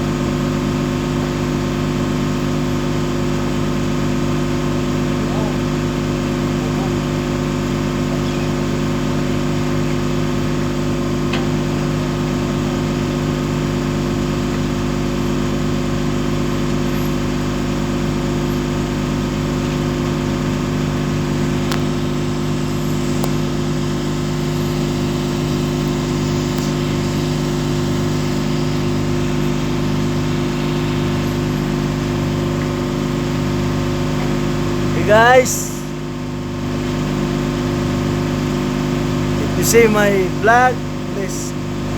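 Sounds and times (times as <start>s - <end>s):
ship engine droning: 17.2s - 38.0s, 38.8s - 41.9s.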